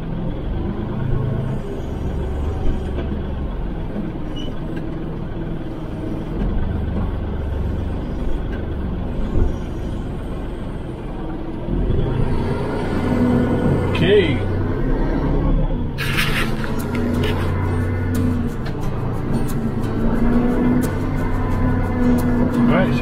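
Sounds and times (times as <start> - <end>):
engine knocks: 0.0 - 15.1, 15.7 - 23.0
tractor diesel engine running: 0.0 - 23.0.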